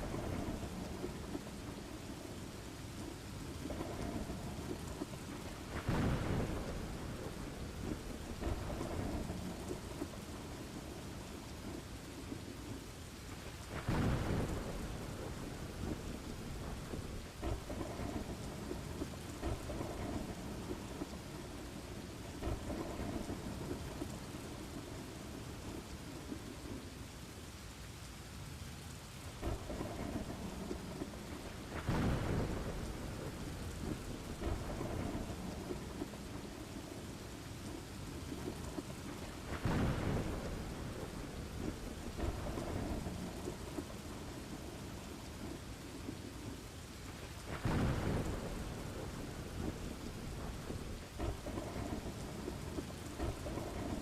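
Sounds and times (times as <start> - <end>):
thunder rumbling: 0.0 - 26.9, 29.3 - 54.0
steady rain: 0.0 - 54.0.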